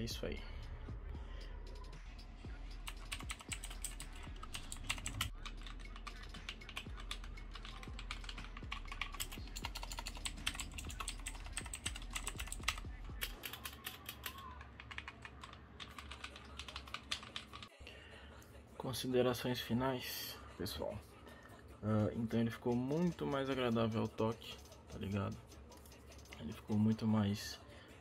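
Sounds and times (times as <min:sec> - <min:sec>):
rapid mechanical keyboard typing: 0:02.8 - 0:17.7, 0:22.2 - 0:27.2.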